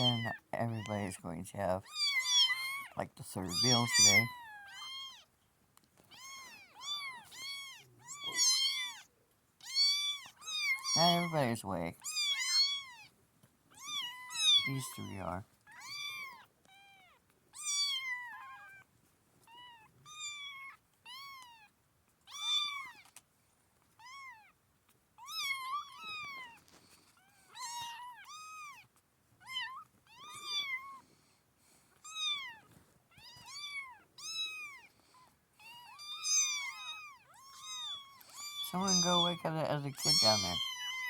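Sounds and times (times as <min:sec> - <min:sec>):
kittens mewing: 0:00.0 - 0:01.0, 0:01.8 - 0:05.3, 0:06.1 - 0:13.1, 0:13.7 - 0:18.8, 0:22.3 - 0:23.2, 0:25.2 - 0:26.6, 0:27.2 - 0:31.2, 0:31.9 - 0:41.0.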